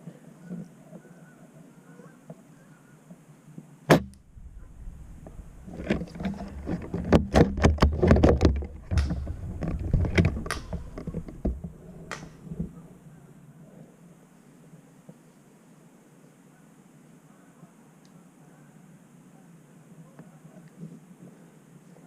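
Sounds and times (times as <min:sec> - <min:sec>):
airsoft gunshots: 0:03.9 - 0:05.5
low rumble: 0:04.0 - 0:12.8.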